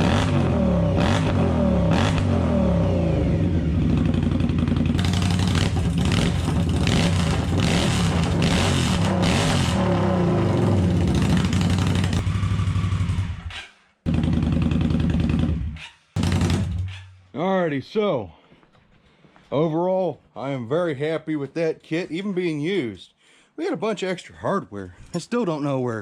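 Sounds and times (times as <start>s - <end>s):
motorcycle engine revving: 0.0s - 17.1s.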